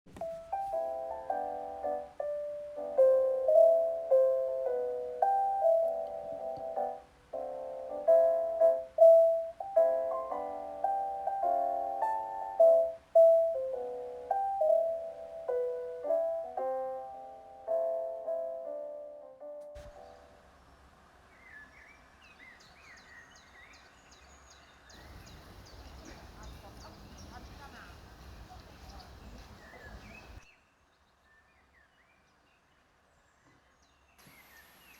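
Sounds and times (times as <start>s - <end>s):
soft solo piano: 0.1s - 20.5s
faint outdoor ambience: 0.1s - 34.9s
small birds chirping: 19.9s - 34.9s.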